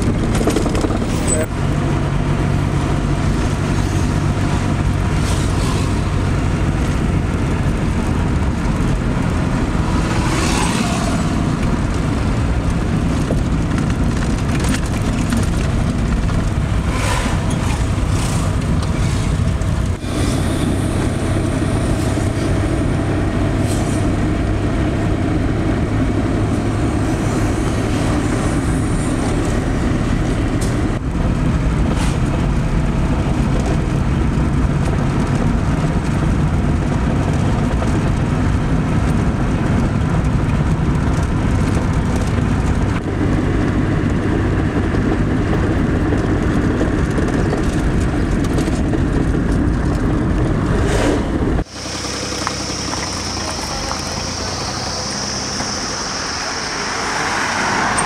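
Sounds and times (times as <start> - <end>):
road noise: 0.0 - 58.0
vehicle engine humming: 0.0 - 58.0
high-pitched rattles or squeaks: 0.4 - 1.5.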